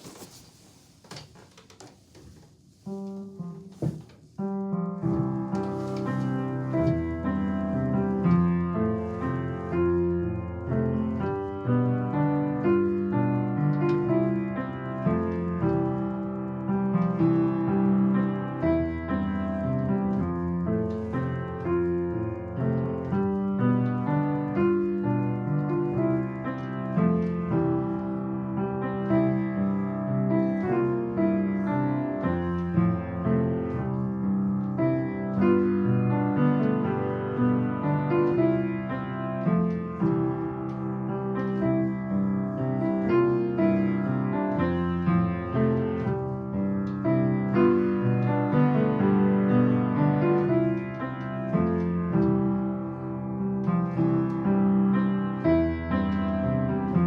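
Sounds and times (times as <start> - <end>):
solo piano melody: 0.0 - 1.0, 2.0 - 57.0.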